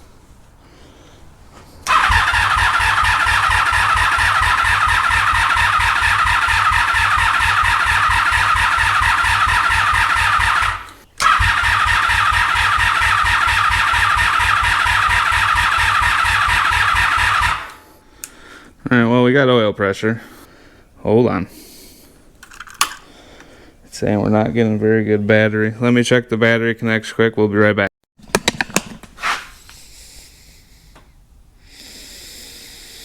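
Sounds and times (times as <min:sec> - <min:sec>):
electric starter cranking engine: 0:01.8 - 0:17.8.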